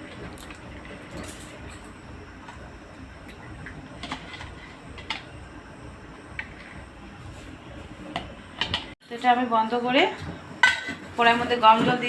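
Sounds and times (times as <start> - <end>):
low hum: 0.0 - 9.0.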